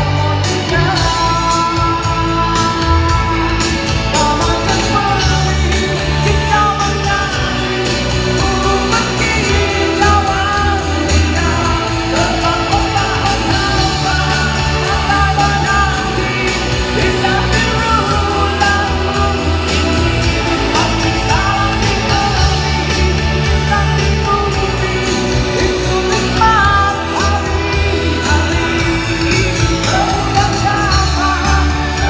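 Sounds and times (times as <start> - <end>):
person singing: 0.0 - 32.0
rock band playing: 0.0 - 32.0.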